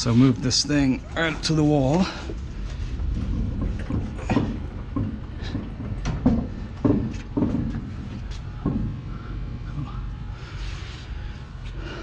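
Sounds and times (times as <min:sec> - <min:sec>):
heavy machine rolling on concrete: 0:00.0 - 0:09.2
clunks and knocks: 0:01.8 - 0:09.2.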